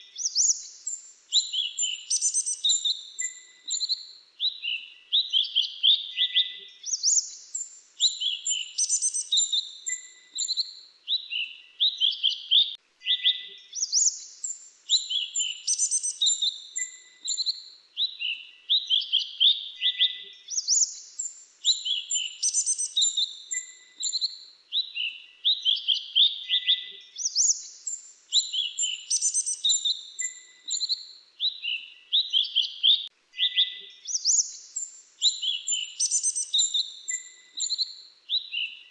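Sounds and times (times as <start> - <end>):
songbird chirping and whistling: 0.0 - 38.9.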